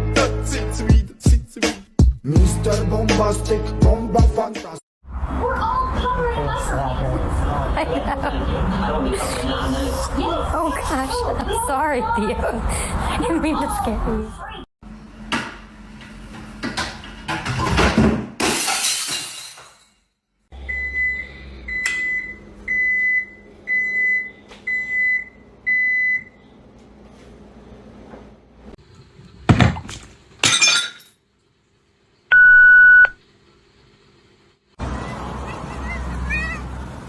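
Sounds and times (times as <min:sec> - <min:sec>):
clattering crash: 0:17.3 - 0:20.0.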